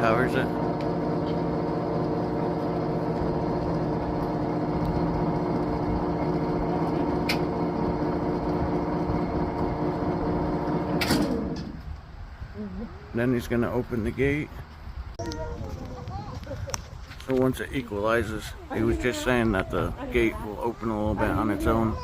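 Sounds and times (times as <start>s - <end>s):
electric motor humming: 0.0s - 11.8s.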